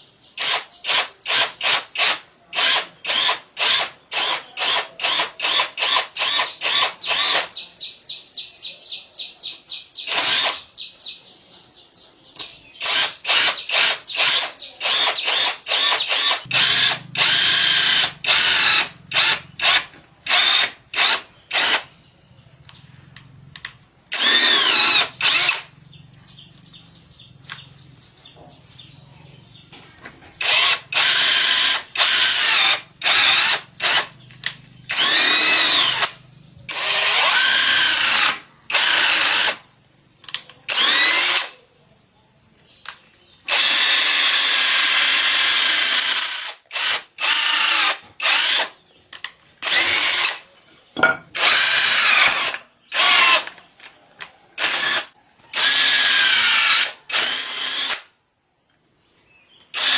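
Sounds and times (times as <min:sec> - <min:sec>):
power drill bursts: 0:00.4 - 0:07.6, 0:10.1 - 0:10.6, 0:12.8 - 0:21.9, 0:23.6 - 0:25.7, 0:30.4 - 0:34.2, 0:34.8 - 0:39.7, 0:40.7 - 0:41.6, 0:43.5 - 0:48.8, 0:49.6 - 0:53.6, 0:54.6 - 0:58.1.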